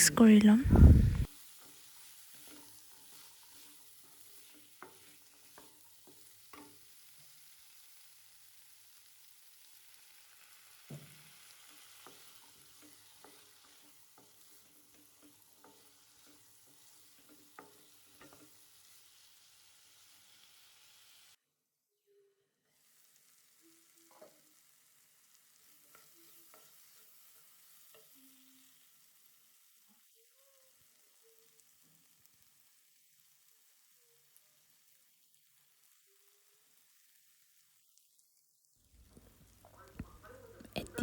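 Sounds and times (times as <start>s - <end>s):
food sizzling in a pan: 0.0s - 21.4s, 22.0s - 41.0s
spatula knocking and scraping pan: 1.6s - 7.8s, 10.7s - 19.1s.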